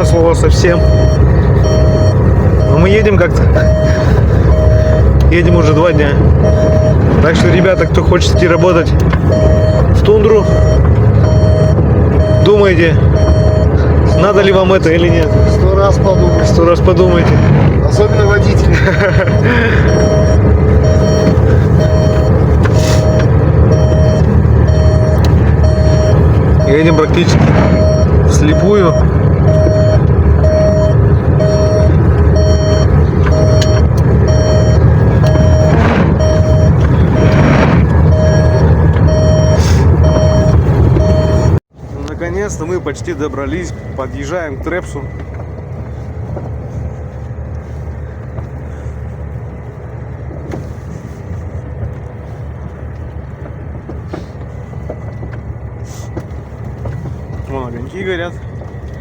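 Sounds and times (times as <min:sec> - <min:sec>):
electronic beeper: 0:00.0 - 0:18.7, 0:19.3 - 0:41.6
road noise: 0:00.0 - 0:59.0
truck engine rumbling: 0:00.0 - 0:59.0.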